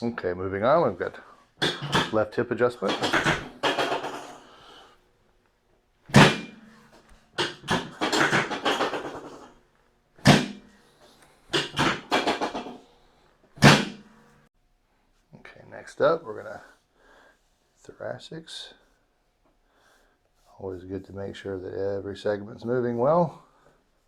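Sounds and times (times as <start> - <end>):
table drop thuds: 1.6 - 2.2, 2.8 - 4.5, 6.1 - 9.5, 10.2 - 10.8, 11.5 - 12.8, 13.6 - 14.2.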